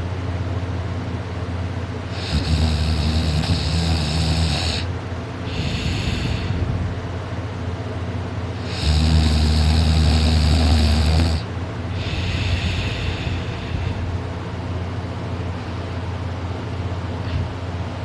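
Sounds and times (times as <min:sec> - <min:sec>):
man snoring: 0:02.1 - 0:04.9, 0:05.5 - 0:06.7, 0:08.6 - 0:14.1.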